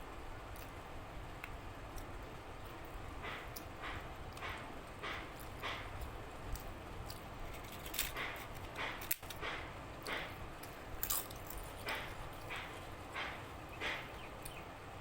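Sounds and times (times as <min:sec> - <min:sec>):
wet chewing of food: 0:03.2 - 0:14.6.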